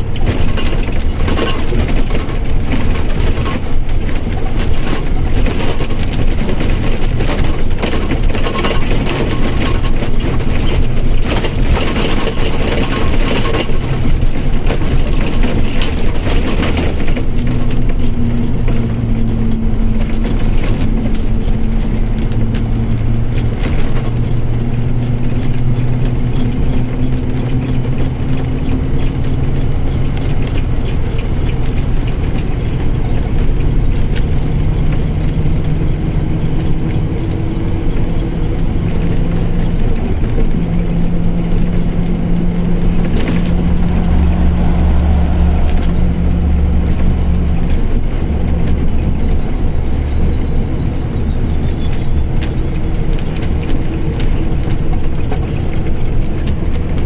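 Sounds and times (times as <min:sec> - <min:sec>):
bus diesel engine running: 0:00.0 - 0:57.0
brief rushing noises: 0:43.1 - 0:47.7.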